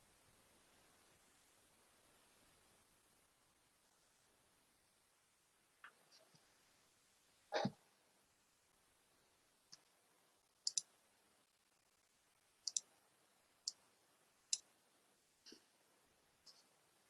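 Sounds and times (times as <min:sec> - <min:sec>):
computer mouse clicks: 0:10.6 - 0:10.9, 0:12.6 - 0:12.9.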